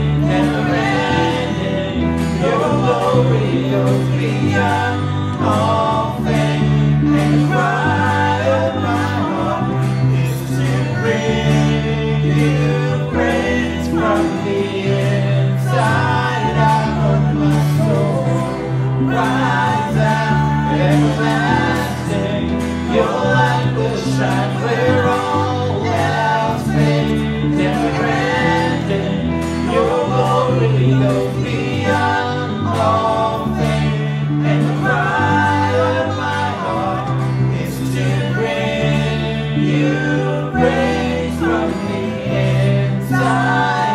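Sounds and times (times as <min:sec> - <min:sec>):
congregation singing worship song: 0:00.0 - 0:43.9
instrumental accompaniment: 0:00.0 - 0:43.9
low bass notes: 0:00.0 - 0:43.9.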